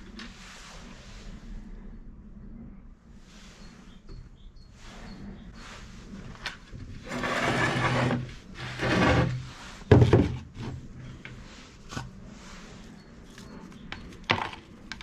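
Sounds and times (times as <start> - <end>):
long scraping strokes: 7.0 - 9.9.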